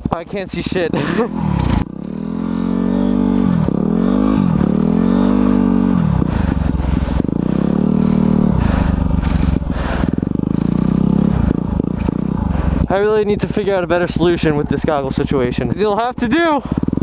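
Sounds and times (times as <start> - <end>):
dirt bike engine revving: 0.0 - 17.0.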